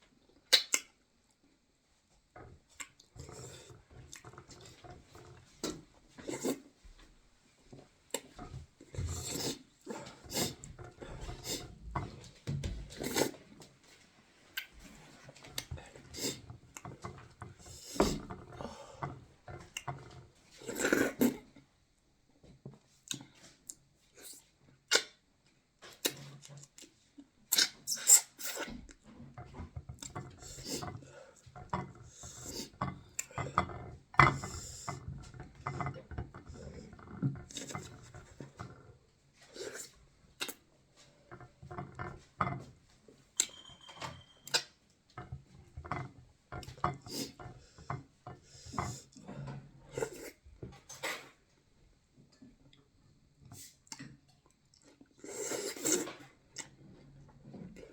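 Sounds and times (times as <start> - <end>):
chewing and mouth smacking: 0.5 - 0.9
dish clinks: 43.5 - 44.4.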